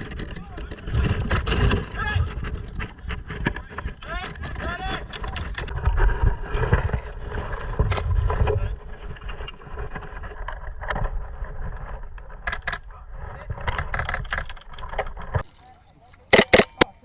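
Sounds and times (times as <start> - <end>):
wind rumble on microphone: 0.0 - 15.4
airsoft gun shots: 16.3 - 16.9.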